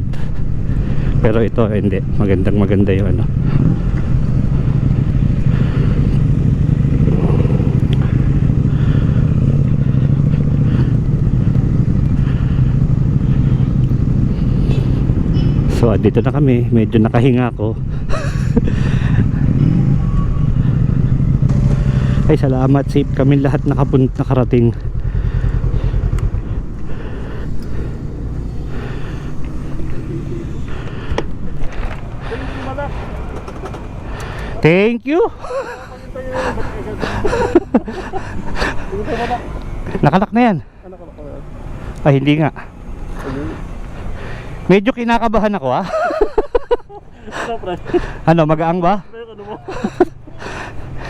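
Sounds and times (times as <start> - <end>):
motorcycle engine running: 0.0 - 34.8.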